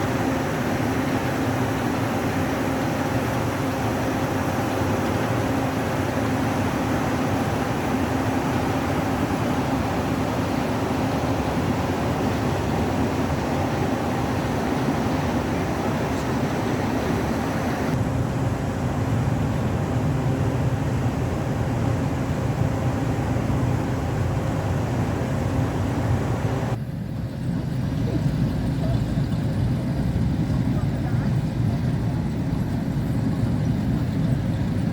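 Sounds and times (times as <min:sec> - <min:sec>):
machine humming: 0:00.0 - 0:26.8.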